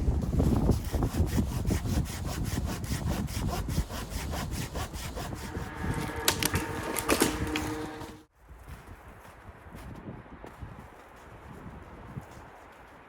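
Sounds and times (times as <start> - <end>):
saw cutting wood: 0.7 - 8.3.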